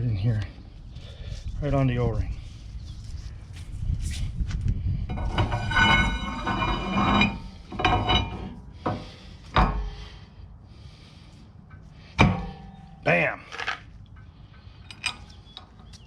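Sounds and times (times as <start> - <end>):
metal knocks: 5.1 - 9.0, 12.2 - 13.0
metal scraping and ringing: 5.1 - 9.0, 12.2 - 13.0.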